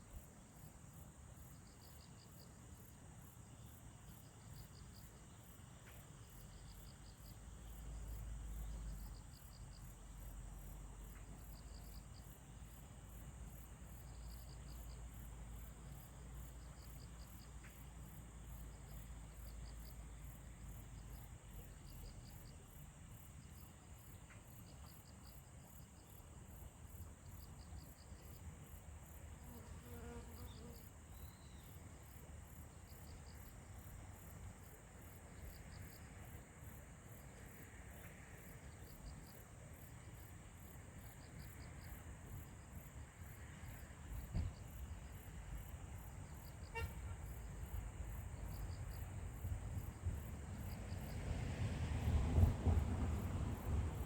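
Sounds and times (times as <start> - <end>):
insects chirping: 0.0 - 54.0
soft thump: 44.3 - 44.6.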